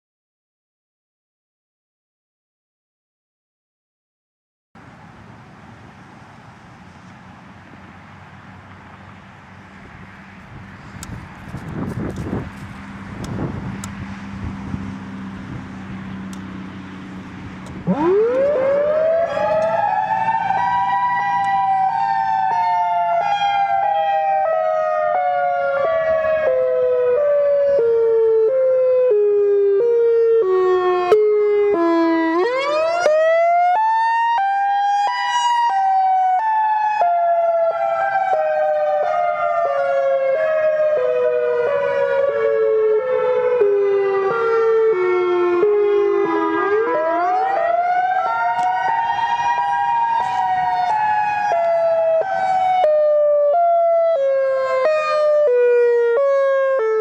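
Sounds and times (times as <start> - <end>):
siren wailing: 17.6 - 57.0.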